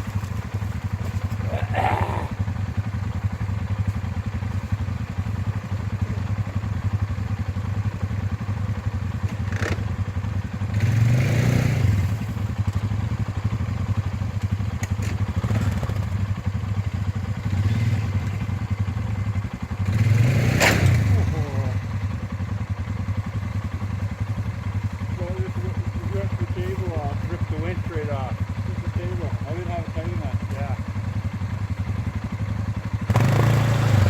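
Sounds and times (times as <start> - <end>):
atv engine revving: 0.0 - 3.9, 9.3 - 23.1, 23.9 - 34.0.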